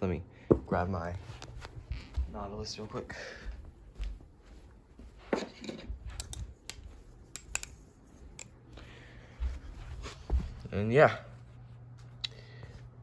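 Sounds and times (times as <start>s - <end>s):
knife metallic clicks and rattles: 6.2s - 8.6s.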